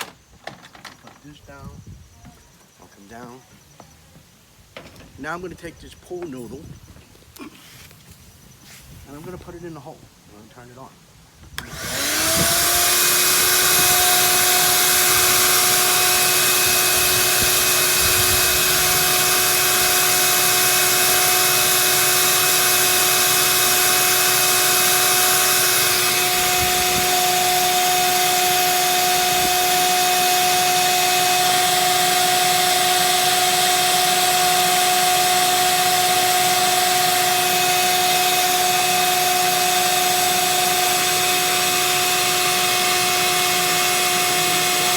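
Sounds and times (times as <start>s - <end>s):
shop vac motor whining: 11.5s - 44.9s.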